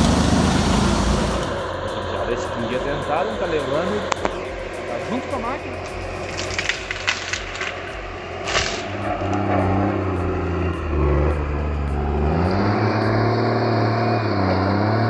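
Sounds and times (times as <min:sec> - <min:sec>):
diesel engine running: 0:00.0 - 0:01.8.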